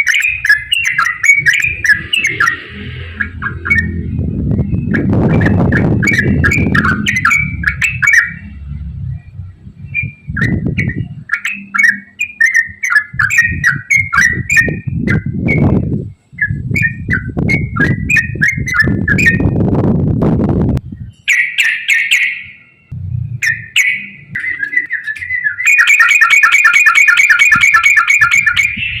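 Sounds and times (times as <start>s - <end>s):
bird chirping song: 0.0s - 19.7s, 20.8s - 29.0s
low rumble: 0.3s - 11.3s, 13.1s - 21.2s, 22.9s - 25.4s.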